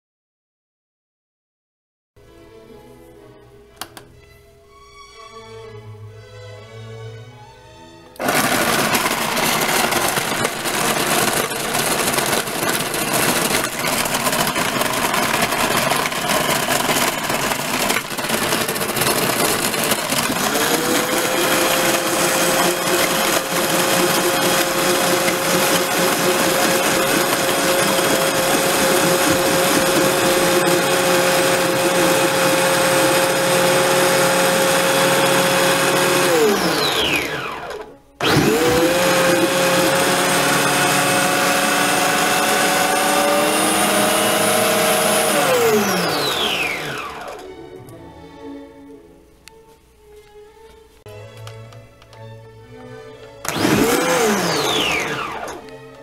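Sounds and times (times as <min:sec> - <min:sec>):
blender grinding ice: 0:08.2 - 0:47.5, 0:53.4 - 0:55.7.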